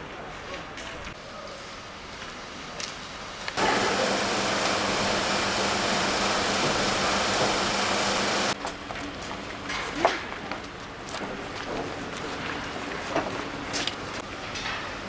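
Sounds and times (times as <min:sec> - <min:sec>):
industrial equipment rushing noise: 0:03.6 - 0:08.6.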